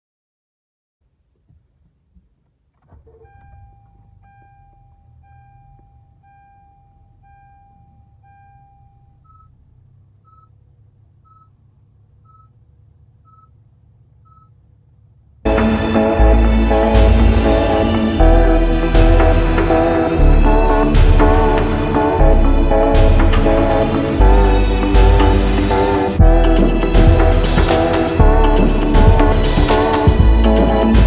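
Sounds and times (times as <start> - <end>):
car warning chime beeping: 3.1 - 10.6, 11.2 - 11.6, 12.2 - 12.6, 13.2 - 13.6, 14.2 - 14.6
loud music: 15.5 - 31.0.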